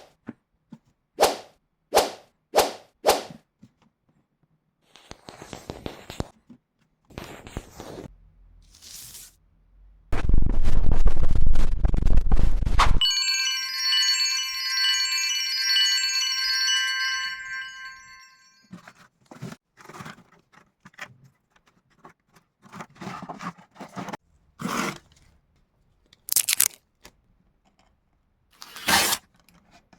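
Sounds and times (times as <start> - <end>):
chime-like ringing chord: 13.0 - 18.7.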